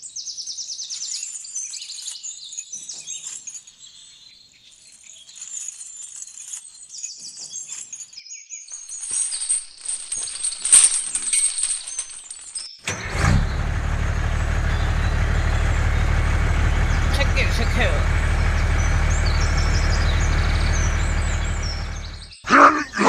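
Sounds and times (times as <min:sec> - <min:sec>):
small birds chirping and trilling: 0:00.0 - 0:09.5, 0:13.4 - 0:22.5
rough rustling noise: 0:08.7 - 0:12.7.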